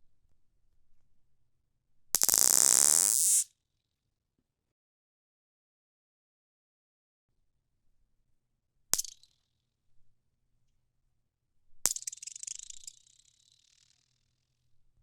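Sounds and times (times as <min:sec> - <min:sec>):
magnets buzzing chatter: 0:02.2 - 0:03.4.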